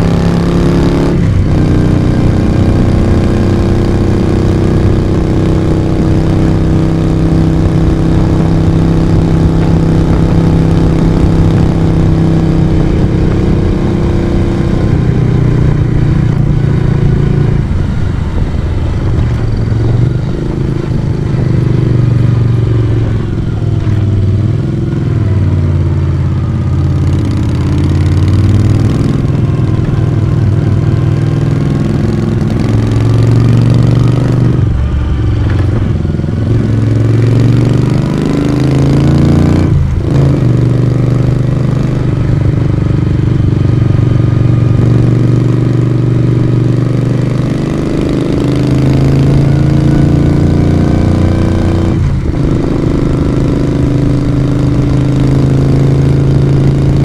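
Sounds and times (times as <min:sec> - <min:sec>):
motorcycle engine changing gears: 0:00.0 - 0:57.0.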